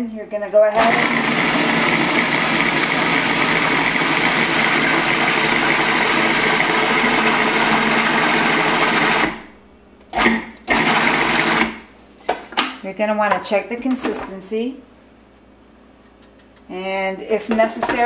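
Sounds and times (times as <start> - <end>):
electric blender running: 0.8 - 9.4, 10.2 - 11.8.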